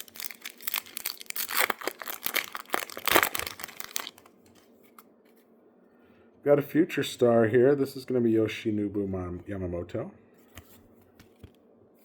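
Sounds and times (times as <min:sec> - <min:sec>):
foil wrapper tearing and crinkling: 0:00.0 - 0:04.3.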